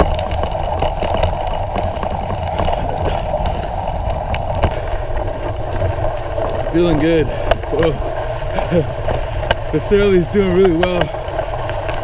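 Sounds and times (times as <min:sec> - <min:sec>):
bicycle tyres on snow: 0:00.0 - 0:12.0
bike knocks and clicks over bumps: 0:00.0 - 0:12.0.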